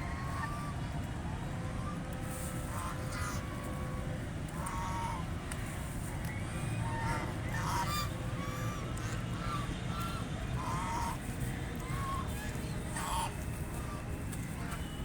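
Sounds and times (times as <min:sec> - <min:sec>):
ducks quacking: 0:10.6 - 0:11.2.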